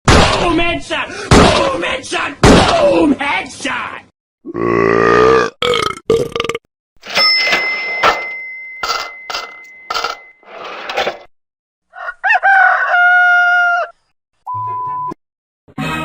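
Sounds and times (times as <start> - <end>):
rooster crowing: 11.9 - 14.0.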